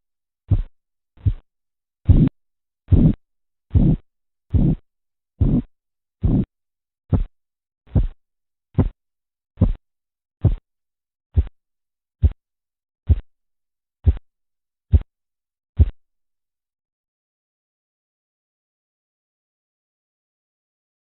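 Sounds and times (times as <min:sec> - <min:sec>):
pulse thumps through stethoscope: 0:00.5 - 0:01.4, 0:02.1 - 0:04.8, 0:05.4 - 0:06.5, 0:07.1 - 0:07.3, 0:07.9 - 0:08.2, 0:08.8 - 0:09.0, 0:09.6 - 0:09.8, 0:10.4 - 0:10.6, 0:11.4 - 0:11.6, 0:12.2 - 0:12.4, 0:13.1 - 0:13.3, 0:14.0 - 0:14.2.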